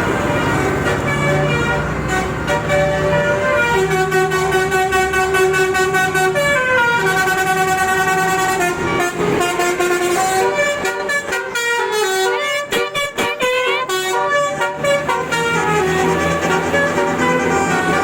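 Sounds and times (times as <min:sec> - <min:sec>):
bus horn playing a tune: 0:00.0 - 0:18.0.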